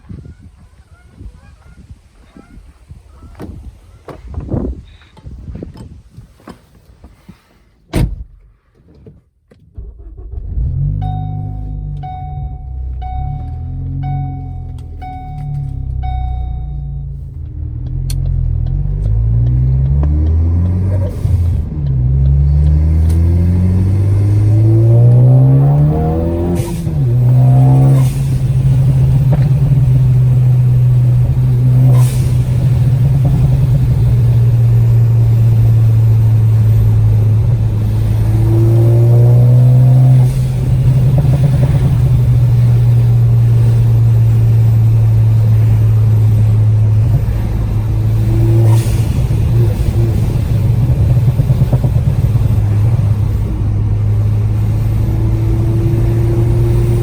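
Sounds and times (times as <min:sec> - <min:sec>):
car engine accelerating: 0:09.8 - 0:57.0
exhaust pops and cracks: 0:17.4 - 0:38.4, 0:40.2 - 0:54.7.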